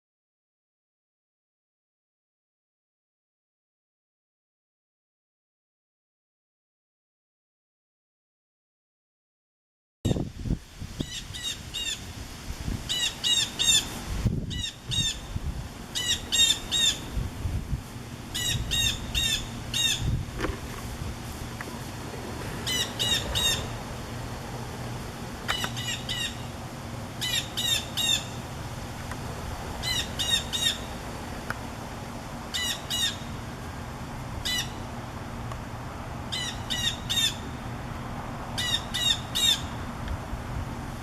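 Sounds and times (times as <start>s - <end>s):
blue jay harsh calls: 11.0s - 12.1s, 12.9s - 17.2s, 18.2s - 20.2s, 22.4s - 28.9s, 29.8s - 31.0s, 32.4s - 33.5s, 34.4s - 35.0s, 36.2s - 37.6s, 38.5s - 39.8s.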